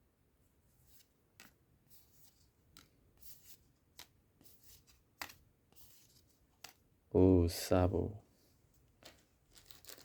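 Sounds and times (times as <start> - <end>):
trading cards sliding: 9.0 - 10.0.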